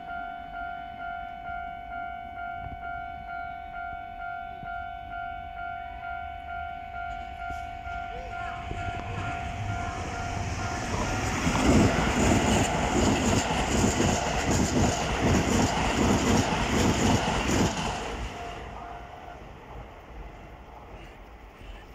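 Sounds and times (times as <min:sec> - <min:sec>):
electric train passing: 0:00.0 - 0:21.9
level-crossing warning bell: 0:00.0 - 0:21.9
train wheels clattering over rail joints: 0:10.3 - 0:18.2.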